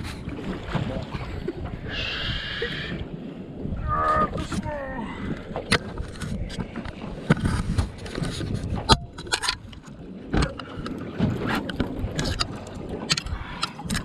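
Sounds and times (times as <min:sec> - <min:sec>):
water noise: 0:00.0 - 0:14.0
wind: 0:00.0 - 0:14.0
drawn-out voice-like call: 0:03.8 - 0:04.4.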